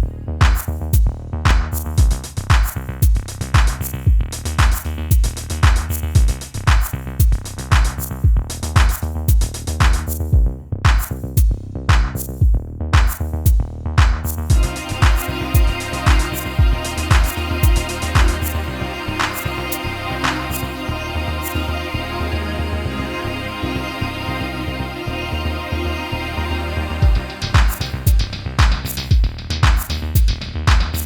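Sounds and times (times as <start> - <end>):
drum machine beat: 0.0 - 18.6, 27.0 - 31.0
melodic instruments: 14.5 - 28.5.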